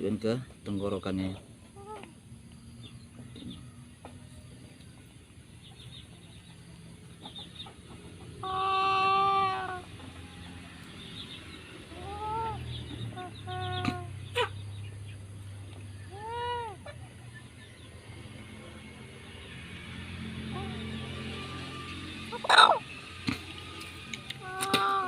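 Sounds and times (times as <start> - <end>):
chicken squawking: 8.3 - 10.0, 11.9 - 14.6, 16.1 - 17.1, 22.3 - 22.9, 24.4 - 25.0.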